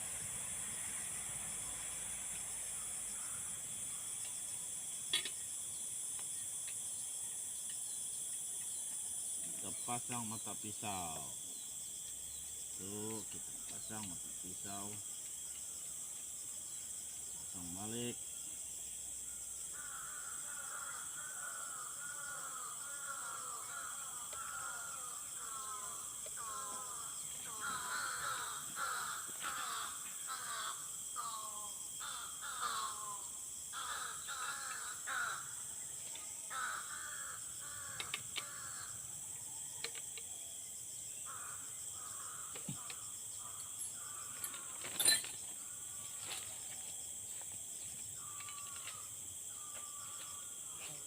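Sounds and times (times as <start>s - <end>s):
bird calling: 19.8s - 35.5s.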